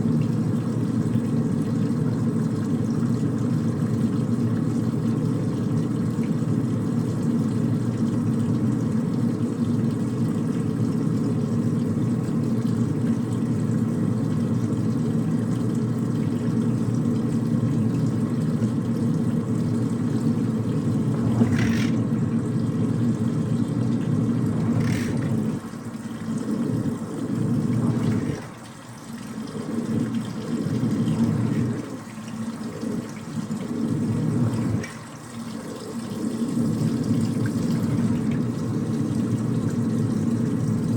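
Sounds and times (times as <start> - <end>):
washing machine spinning: 0.0 - 40.9.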